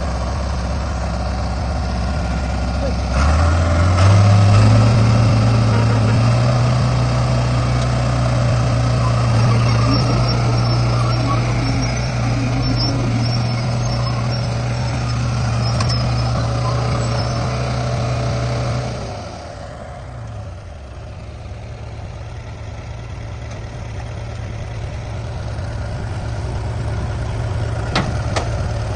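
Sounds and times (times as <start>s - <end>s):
diesel engine humming: 0.0s - 28.9s.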